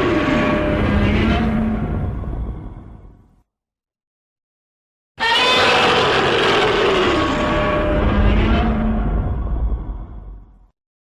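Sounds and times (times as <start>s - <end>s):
raspy monster roar: 0.0s - 1.8s, 5.2s - 9.1s.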